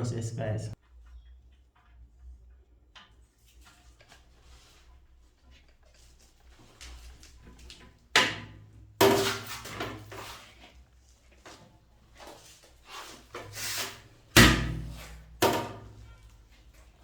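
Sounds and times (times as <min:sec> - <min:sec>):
toilet parts knocking and clattering: 0:07.6 - 0:10.2, 0:14.3 - 0:16.1.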